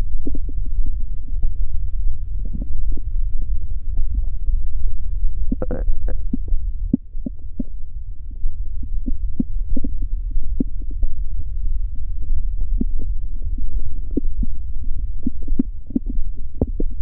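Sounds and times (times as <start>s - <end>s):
stomach growling and gurgling: 0.0s - 0.7s, 2.3s - 3.2s, 5.4s - 7.8s, 8.8s - 11.2s, 15.2s - 17.0s.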